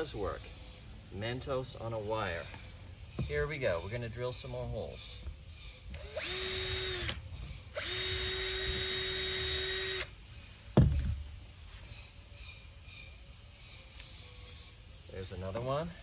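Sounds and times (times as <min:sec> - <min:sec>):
electric drill whine: 0:05.9 - 0:11.8
sharp thump: 0:10.7 - 0:11.2.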